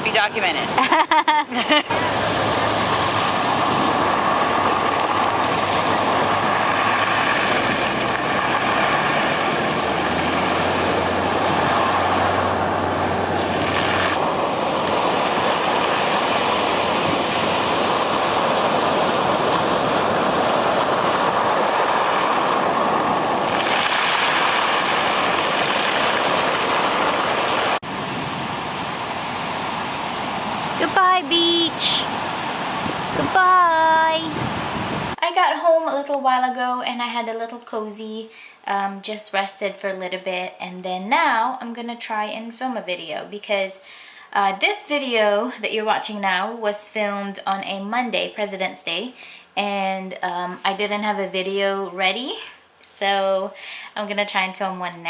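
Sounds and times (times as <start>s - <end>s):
ocean surf rushing: 0.0s - 35.2s
wind on microphone: 1.6s - 35.2s.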